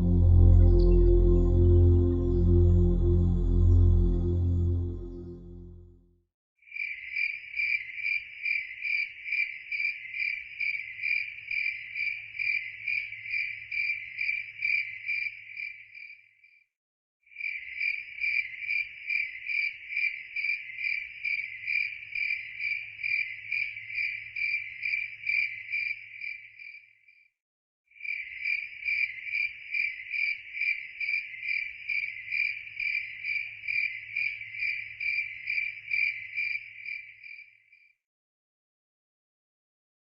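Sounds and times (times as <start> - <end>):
crickets chirping: 6.7 - 16.2, 17.4 - 27.3, 28.0 - 38.0.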